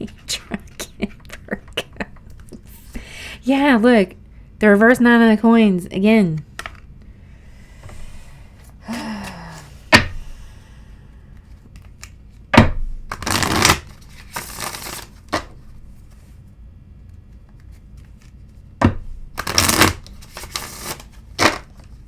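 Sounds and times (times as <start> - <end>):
cards shuffling rustle: 13.1 - 16.4, 17.3 - 18.6, 19.4 - 22.0.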